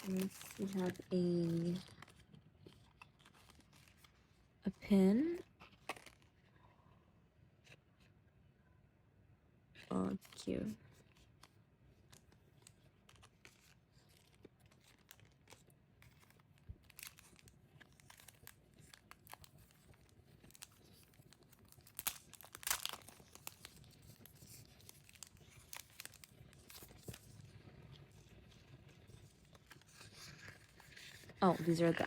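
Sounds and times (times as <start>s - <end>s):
packaging tearing: 0.0s - 4.2s, 5.6s - 6.3s, 12.1s - 32.0s
packaging crinkling: 0.0s - 4.5s, 5.1s - 6.7s, 10.1s - 32.0s.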